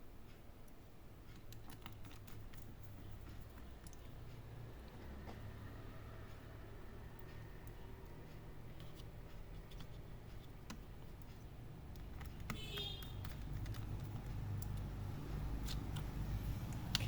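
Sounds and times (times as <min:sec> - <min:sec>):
laptop cooling fan running: 0:00.0 - 0:17.0
handling clicks and taps: 0:07.2 - 0:17.0.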